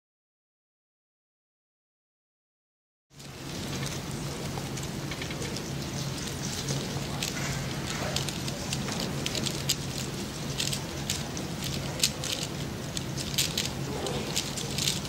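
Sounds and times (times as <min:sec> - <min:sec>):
steady low hum: 0:03.1 - 0:15.0
puzzle cube clicking and rattling: 0:03.5 - 0:15.0.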